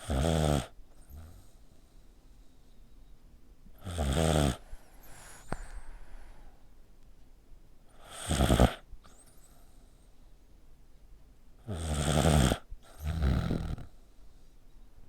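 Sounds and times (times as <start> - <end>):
pet snoring: 0.0 - 1.6, 3.8 - 5.9, 7.9 - 9.2, 11.6 - 14.0.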